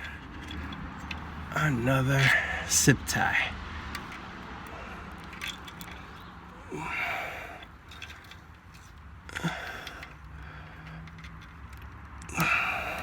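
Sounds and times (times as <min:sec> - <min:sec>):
faint handling noises: 0:00.0 - 0:03.0, 0:03.8 - 0:13.0
breathy rustle: 0:04.6 - 0:11.4.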